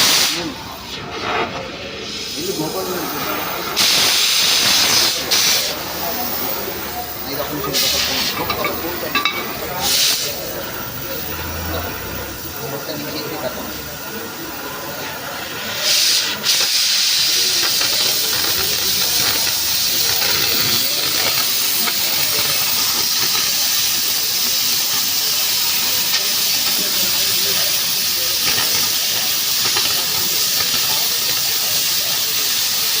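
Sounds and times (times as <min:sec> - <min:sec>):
torch pop: 0:00.0 - 0:01.6, 0:03.7 - 0:05.8
gas cutting torch hissing: 0:00.0 - 0:33.0.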